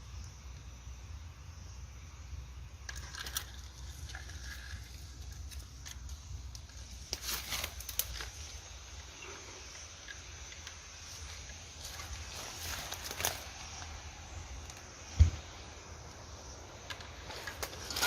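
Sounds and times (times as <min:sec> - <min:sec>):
dry leaves and twigs crunching: 0:02.9 - 0:15.5, 0:16.8 - 0:18.0.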